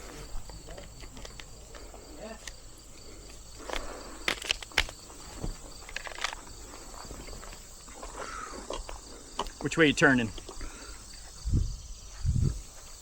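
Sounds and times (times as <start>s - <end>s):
crickets chirping: 0.0s - 13.0s
handgun clicks: 0.6s - 1.8s.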